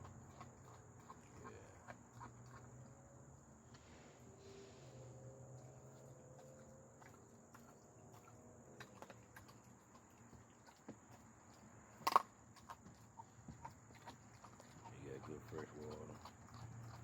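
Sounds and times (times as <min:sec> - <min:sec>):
dog chewing and crunching: 0:00.0 - 0:03.2, 0:05.5 - 0:17.0.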